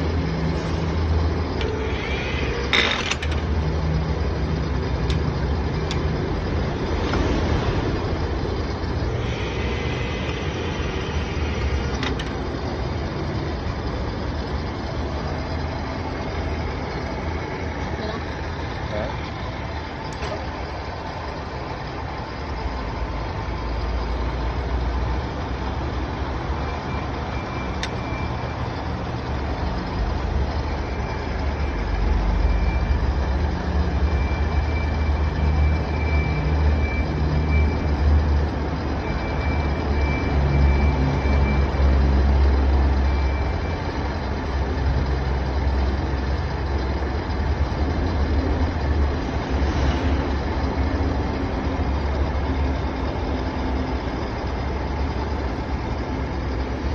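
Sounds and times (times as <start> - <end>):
milling machine motor hum: 1.2 - 20.0.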